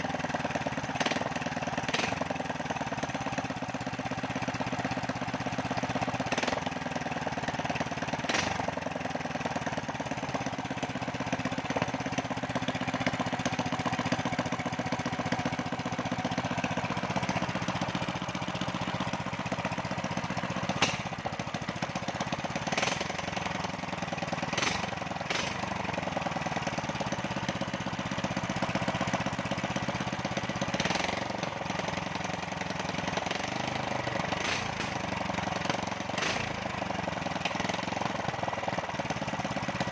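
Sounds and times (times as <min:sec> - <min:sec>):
small petrol engine running: 0:00.0 - 0:39.9.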